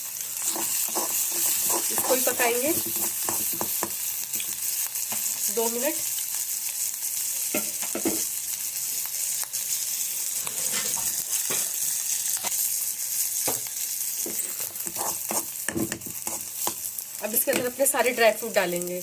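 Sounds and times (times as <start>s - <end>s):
food sizzling in hot ghee: 0.0s - 19.0s
stirring scrapes against pan: 0.4s - 4.5s, 10.4s - 11.8s, 14.2s - 16.9s.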